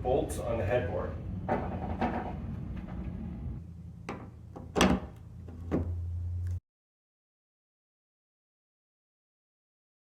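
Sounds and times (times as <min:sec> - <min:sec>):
steady low hum: 0:00.0 - 0:06.6.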